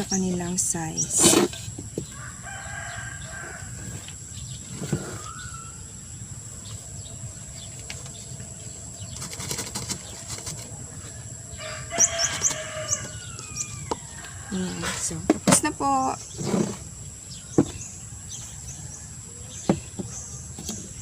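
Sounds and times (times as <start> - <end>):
rooster crowing: 2.1 - 4.0, 11.0 - 14.9.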